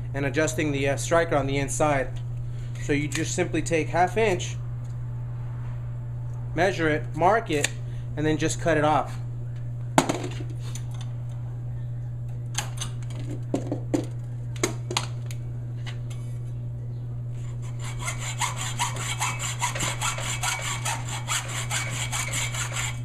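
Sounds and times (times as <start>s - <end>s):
saw cutting through metal: 17.4s - 23.0s.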